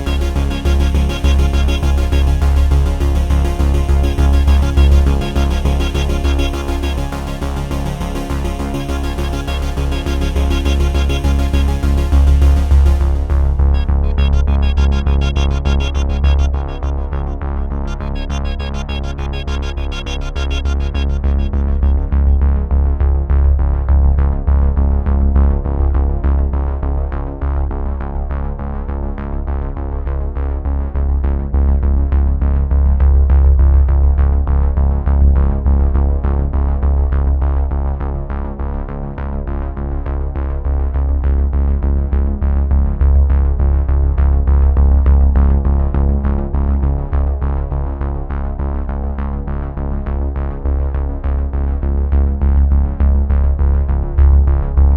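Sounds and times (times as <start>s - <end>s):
synthesizer background music: 0.0s - 22.8s.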